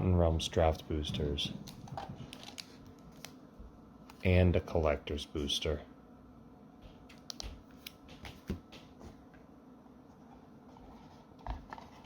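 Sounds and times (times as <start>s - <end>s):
faint steady hum: 0.0s - 12.0s
cardboard packaging clicks and taps: 7.1s - 9.2s.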